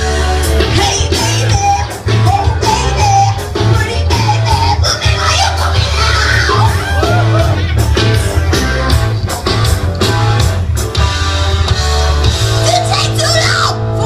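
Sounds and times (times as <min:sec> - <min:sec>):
electric guitar: 0:00.0 - 0:14.0
rock music: 0:00.0 - 0:14.0.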